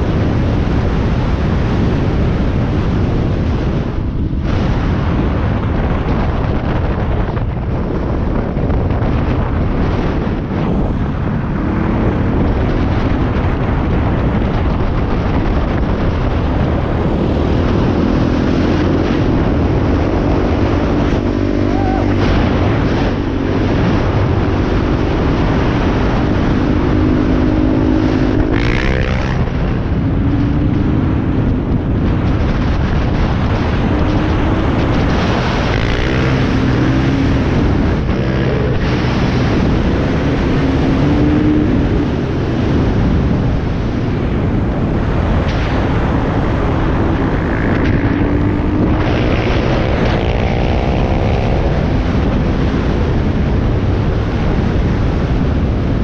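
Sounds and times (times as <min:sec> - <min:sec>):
dirt bike engine running: 0:00.0 - 0:56.0
wind rushing on microphone: 0:00.0 - 0:56.0.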